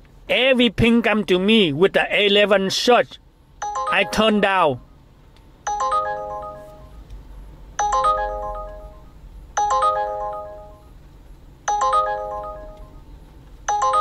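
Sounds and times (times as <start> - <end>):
phone alert chime: 3.6 - 4.6, 5.7 - 7.0, 7.8 - 10.9, 11.7 - 13.0, 13.7 - 14.0.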